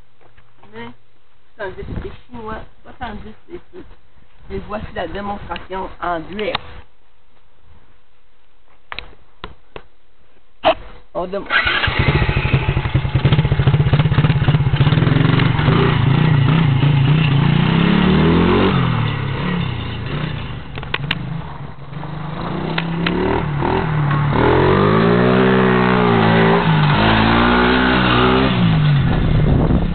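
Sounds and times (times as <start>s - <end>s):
mini atv engine revving: 11.5s - 19.1s, 22.0s - 29.9s.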